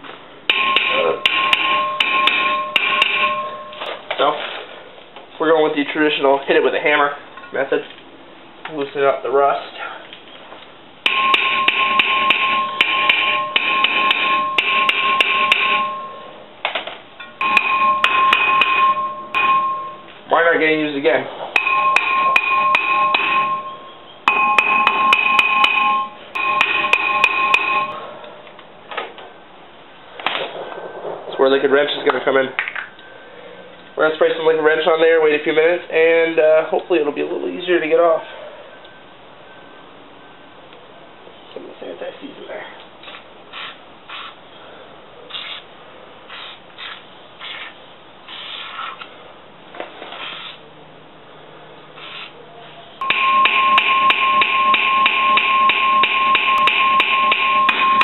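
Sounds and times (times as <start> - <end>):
hammer striking ringing metal: 0.5 - 3.9, 11.0 - 16.4, 17.4 - 20.1, 21.6 - 28.0, 53.0 - 58.0
aerosol can spraying: 43.1 - 44.4, 46.3 - 47.7, 52.0 - 52.3.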